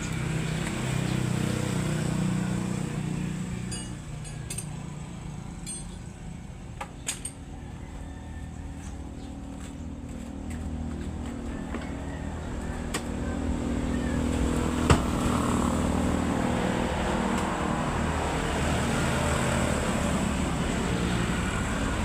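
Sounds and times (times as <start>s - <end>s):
vehicle engine running: 0.0s - 7.1s, 7.7s - 18.2s.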